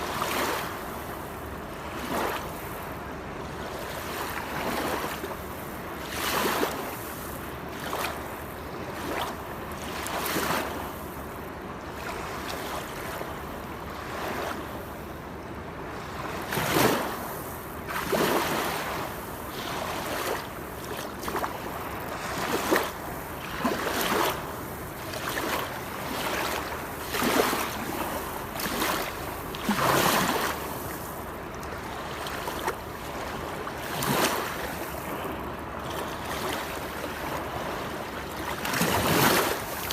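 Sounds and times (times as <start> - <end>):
water splashes: 17.9 - 39.9.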